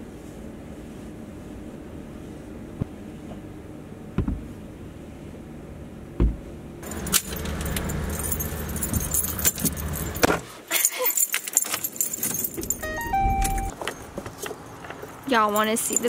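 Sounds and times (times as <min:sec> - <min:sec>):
low car rumble: 0:05.9 - 0:10.4
keys jangling: 0:06.8 - 0:13.7, 0:14.7 - 0:16.0.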